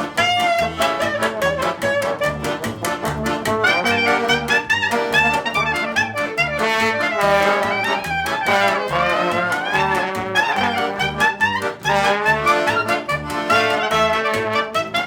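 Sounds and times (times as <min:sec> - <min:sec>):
brass horns playing: 0:00.0 - 0:15.0
jazzy beat: 0:00.0 - 0:15.0.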